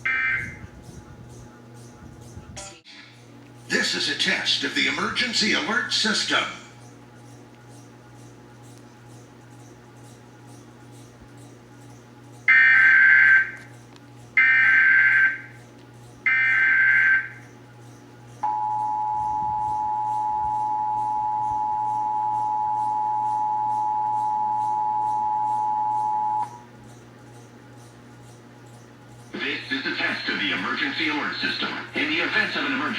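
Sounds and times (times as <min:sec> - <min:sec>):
two-tone alert signal: 0:00.1 - 0:00.6, 0:18.4 - 0:26.6
rasping data bursts: 0:12.2 - 0:13.7, 0:27.3 - 0:32.9.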